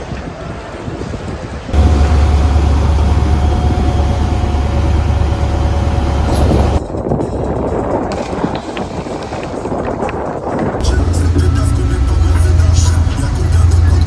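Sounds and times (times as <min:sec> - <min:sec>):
boat engine droning: 0:01.8 - 0:06.8, 0:10.8 - 0:14.0
faint engine whine: 0:01.8 - 0:06.8, 0:10.8 - 0:14.0.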